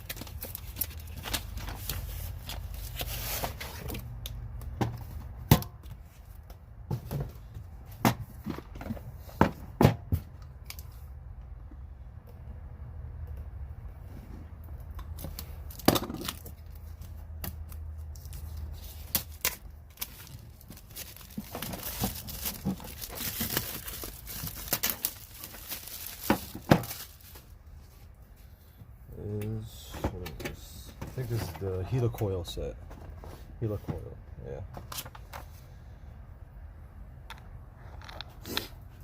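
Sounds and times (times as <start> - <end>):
packaging torn and crinkled: 0.0 - 3.4, 15.2 - 27.5.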